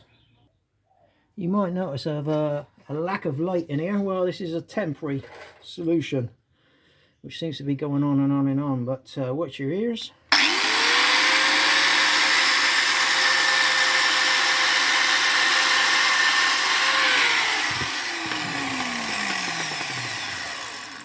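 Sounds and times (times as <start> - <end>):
angle grinder on metal: 10.3 - 21.0.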